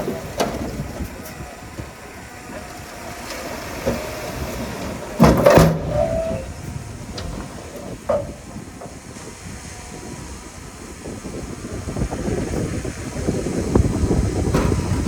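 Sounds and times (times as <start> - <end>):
metal clanks and knocks: 0.0 - 9.0, 14.4 - 15.0
heavy machinery rumble: 0.0 - 15.0
clattering bang: 3.8 - 9.0, 14.4 - 15.0
brief machine squeal: 5.8 - 6.6.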